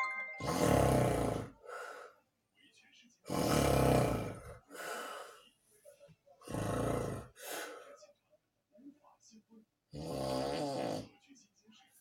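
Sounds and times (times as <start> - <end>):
person snoring: 0.4 - 1.5, 3.3 - 4.6, 6.4 - 7.4, 10.0 - 11.1
quiet breath: 1.5 - 2.3, 4.6 - 6.3, 7.3 - 8.2.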